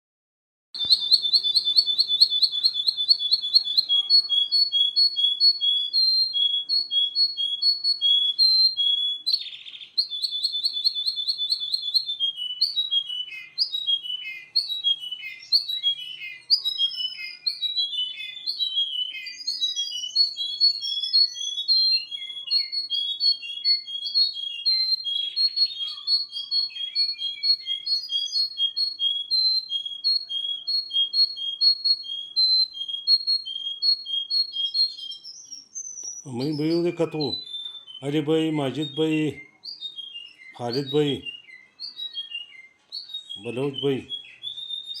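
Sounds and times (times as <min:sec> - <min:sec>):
canary singing: 0:00.8 - 0:45.0.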